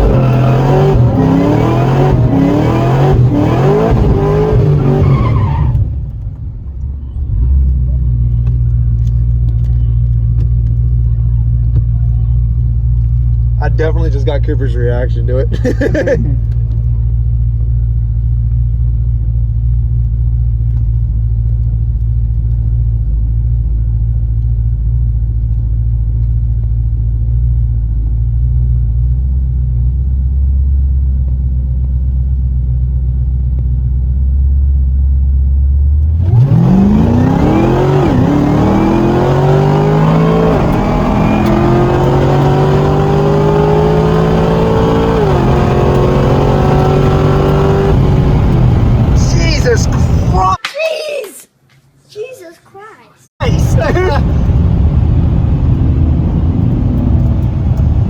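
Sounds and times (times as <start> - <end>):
car engine accelerating through gears: 0.0 - 6.5, 35.7 - 50.5, 53.4 - 58.0
car engine rumbling: 0.0 - 50.6, 53.4 - 58.0.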